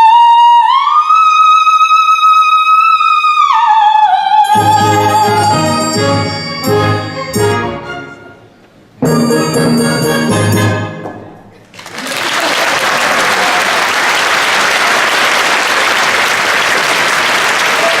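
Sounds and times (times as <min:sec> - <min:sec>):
audience applause: 0:11.6 - 0:18.0.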